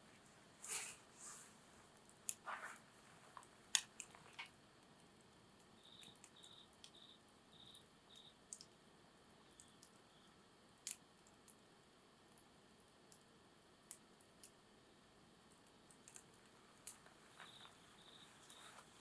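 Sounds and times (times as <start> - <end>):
campfire crackling: 0.6 - 19.0
faint high chirps: 5.7 - 8.4, 17.3 - 19.0.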